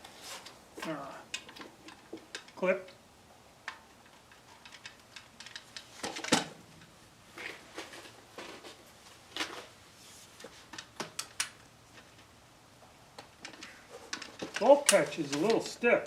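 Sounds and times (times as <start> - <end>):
rifle parts clicking: 3.6 - 6.9, 13.2 - 15.8.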